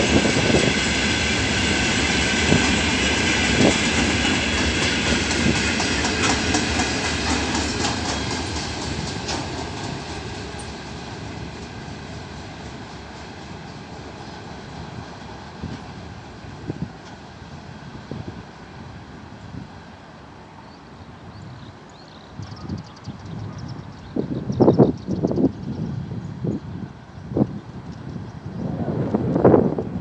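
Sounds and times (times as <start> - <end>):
freight train wheels clicking: 0.0 - 17.5.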